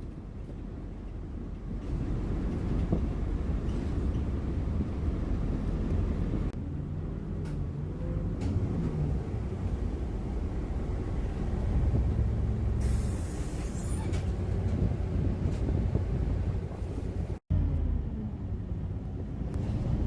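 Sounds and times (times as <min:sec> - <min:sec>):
passing vehicles rumble: 0:00.0 - 0:20.0
short hiss: 0:12.8 - 0:14.1.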